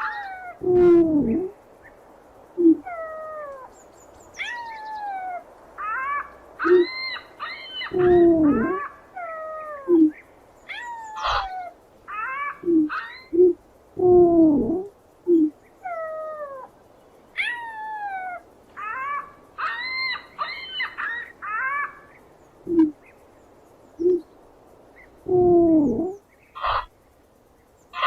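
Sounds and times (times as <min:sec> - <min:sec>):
animal pitched cries: 0:00.0 - 0:01.5, 0:04.4 - 0:09.9, 0:10.7 - 0:13.4, 0:17.4 - 0:22.1.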